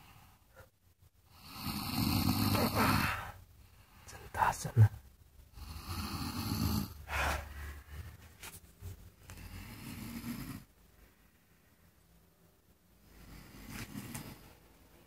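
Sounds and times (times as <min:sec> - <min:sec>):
loud snoring: 0:01.3 - 0:03.3, 0:05.6 - 0:07.0, 0:09.3 - 0:10.7, 0:13.1 - 0:14.5.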